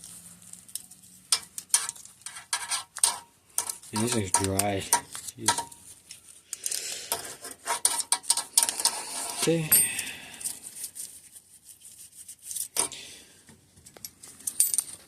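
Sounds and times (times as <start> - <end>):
small metal clicks and clinks: 3.0 - 5.8, 13.8 - 15.0.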